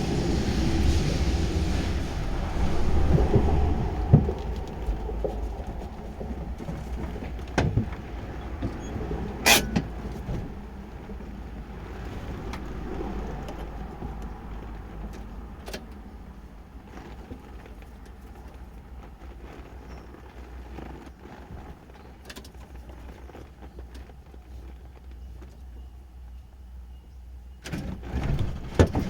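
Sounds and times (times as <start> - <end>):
van engine and road rumble: 0.0 - 29.0
body knocks and rattles: 3.2 - 12.4, 27.7 - 29.0.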